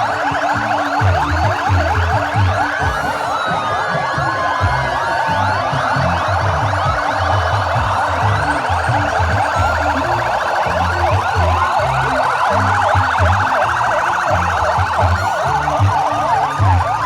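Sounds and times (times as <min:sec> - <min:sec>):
ambulance and motorcycle sirens: 0:00.0 - 0:17.0.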